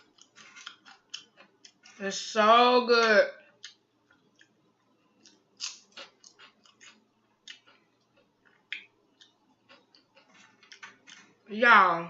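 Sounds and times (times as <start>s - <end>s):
wet mouth smacks while chewing: 5.2s - 11.1s.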